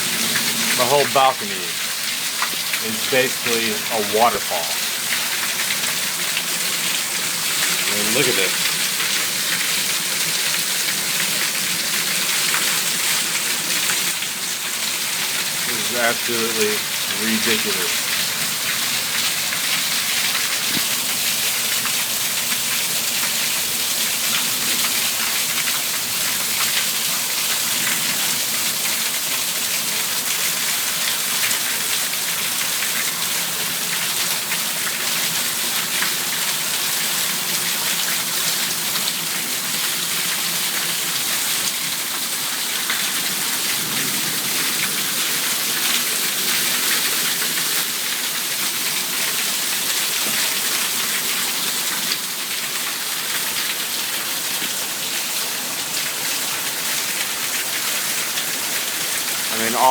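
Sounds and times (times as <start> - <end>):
rain falling: 0.0 - 59.9
water splashing from gutters: 0.0 - 59.9.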